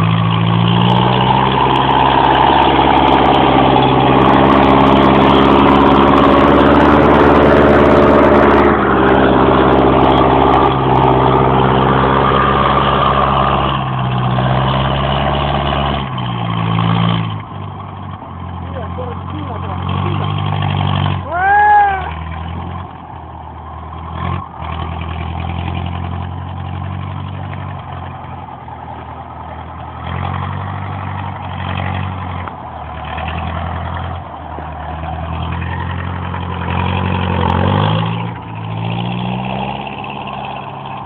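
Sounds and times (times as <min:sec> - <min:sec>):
high-pitched squeal: 0:00.0 - 0:17.4
tractor diesel engine running: 0:00.0 - 0:41.0.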